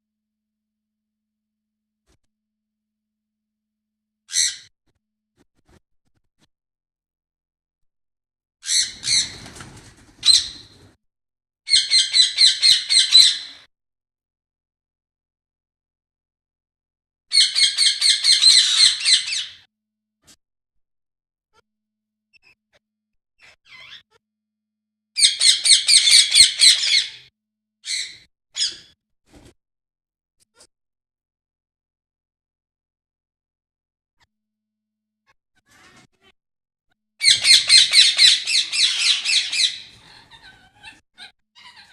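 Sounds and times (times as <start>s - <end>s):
parrot squawking: 4.3s - 4.7s, 8.6s - 9.5s, 10.2s - 10.8s, 11.7s - 13.6s, 17.3s - 19.6s, 25.2s - 27.2s, 37.2s - 41.9s.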